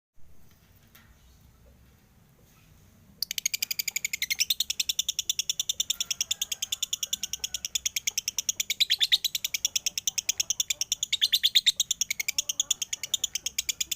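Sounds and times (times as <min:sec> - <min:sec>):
lovebird chattering shrill chirps: 0:03.2 - 0:13.9.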